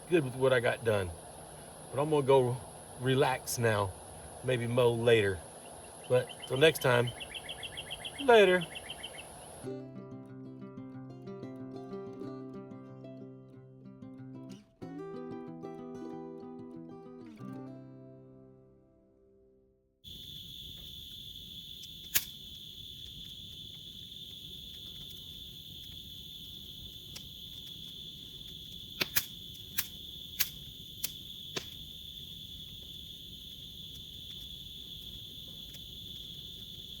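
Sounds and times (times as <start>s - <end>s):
crickets chirping: 0.0s - 9.7s, 20.0s - 37.0s
sharp clicks: 20.1s - 37.0s.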